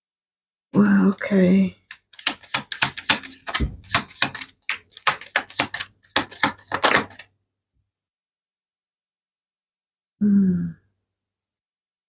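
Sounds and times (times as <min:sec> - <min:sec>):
cards clicking on a table: 0:01.9 - 0:07.3.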